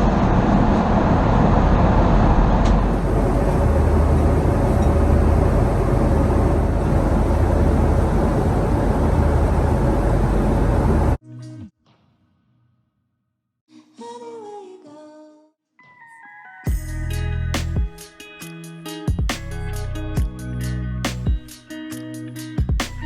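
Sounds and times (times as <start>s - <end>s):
airliner cabin jet engine rush: 0.0s - 11.2s.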